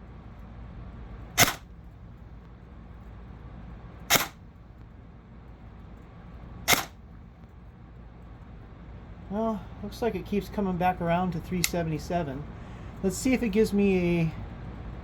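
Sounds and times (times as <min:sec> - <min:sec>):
airsoft gun single shots: 0:01.4 - 0:01.7, 0:04.1 - 0:04.4, 0:06.7 - 0:07.0.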